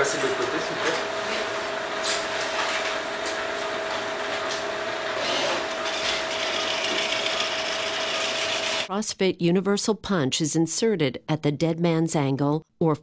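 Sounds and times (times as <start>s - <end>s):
surgical equipment humming: 0.0s - 8.9s.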